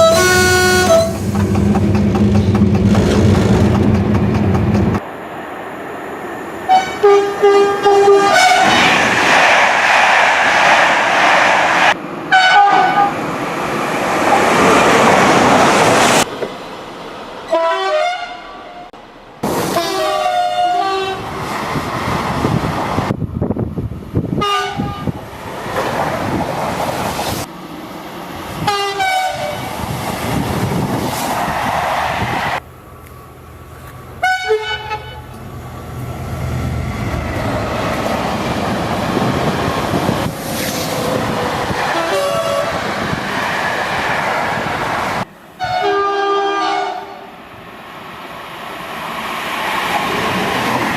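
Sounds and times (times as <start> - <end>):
train horn blasts: 0.0 - 1.2, 6.7 - 8.8, 12.3 - 13.2, 17.5 - 18.9, 19.8 - 21.3, 24.4 - 25.2, 28.6 - 29.7, 34.2 - 35.4, 41.9 - 42.8, 45.6 - 47.3
train rushing past: 0.0 - 17.6, 18.6 - 50.9.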